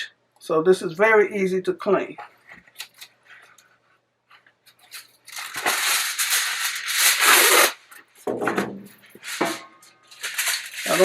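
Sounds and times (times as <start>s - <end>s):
aluminium foil crinkling: 2.7s - 3.6s, 4.6s - 8.2s, 9.1s - 11.0s.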